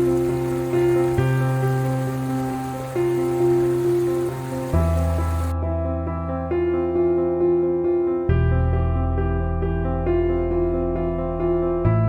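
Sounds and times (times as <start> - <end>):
rain-like hiss: 0.0 - 5.5
electric piano notes: 0.0 - 5.6
low held bass: 8.2 - 12.0.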